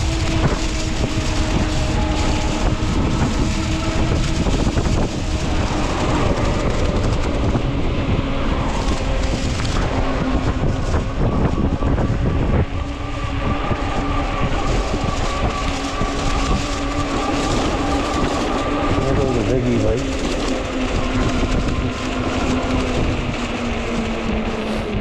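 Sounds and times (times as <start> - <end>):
bike road noise: 0.0 - 25.0
wind buffeting microphone: 0.0 - 25.0.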